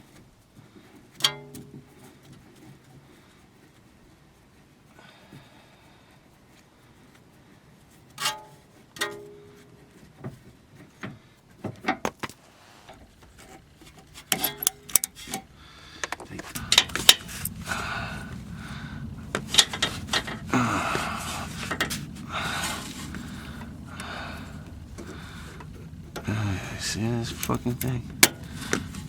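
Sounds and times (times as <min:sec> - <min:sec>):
scraping and rubbing: 0:12.3 - 0:29.0
tools clinking against metal: 0:14.3 - 0:15.4.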